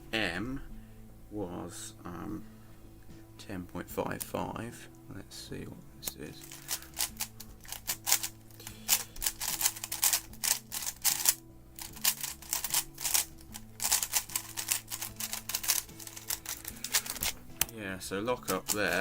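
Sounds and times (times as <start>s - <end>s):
puzzle cube plastic clicks: 6.4s - 17.7s, 18.5s - 19.0s.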